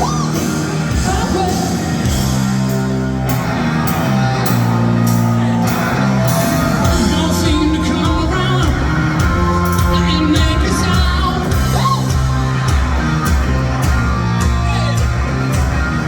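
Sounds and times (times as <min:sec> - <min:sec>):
rock band playing chords: 0:00.0 - 0:16.0
steady drum beat: 0:00.0 - 0:16.0
man singing: 0:06.8 - 0:11.9.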